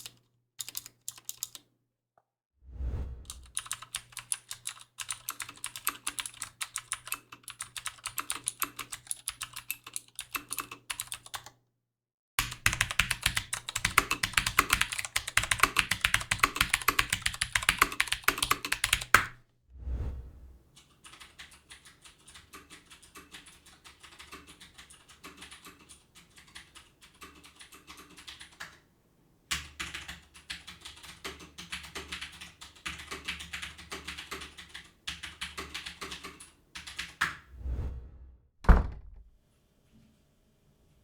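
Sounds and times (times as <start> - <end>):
clicky mechanical keyboard typing: 0.0 - 1.7, 3.3 - 11.5, 12.4 - 19.4, 20.8 - 28.8, 29.5 - 37.3.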